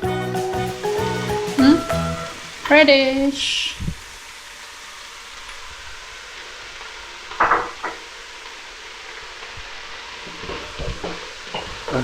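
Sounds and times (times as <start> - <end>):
vegetables sizzling in a pan: 0.0 - 12.0.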